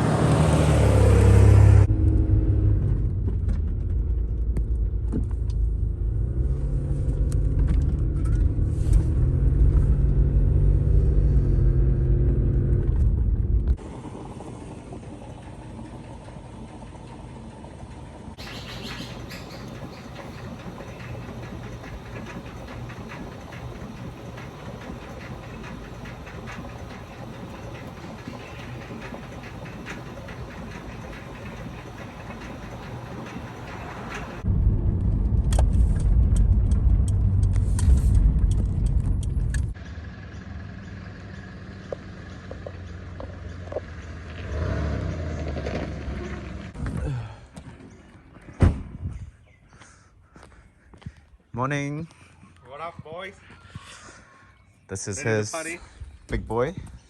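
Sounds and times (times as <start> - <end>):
engine humming: 0.0 - 48.6
car engine idling: 13.0 - 34.5.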